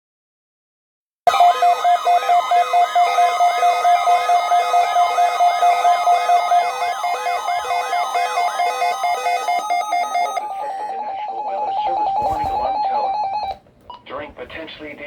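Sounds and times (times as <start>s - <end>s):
rising siren-like sweep: 1.3s - 13.3s
steady alert tone: 1.3s - 13.4s.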